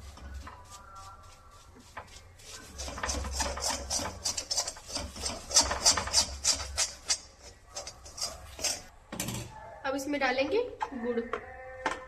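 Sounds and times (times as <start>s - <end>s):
spatula scraping a pan: 0.0s - 8.9s.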